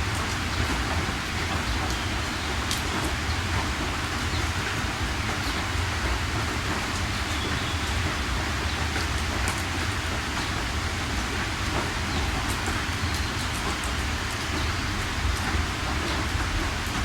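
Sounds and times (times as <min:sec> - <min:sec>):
heavy rain: 0:00.0 - 0:17.0.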